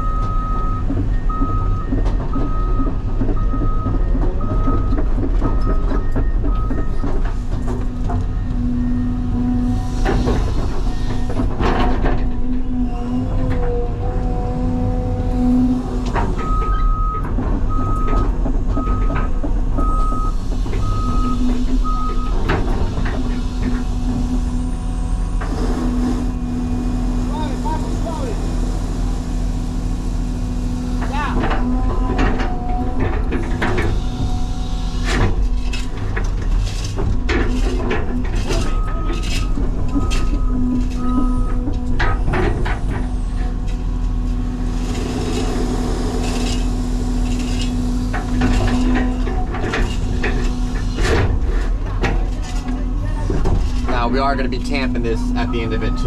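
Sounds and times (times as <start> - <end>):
backup alarm beeping: 0.0 - 7.1, 19.8 - 22.4, 55.3 - 56.0
heavy diesel engine running: 0.0 - 56.0.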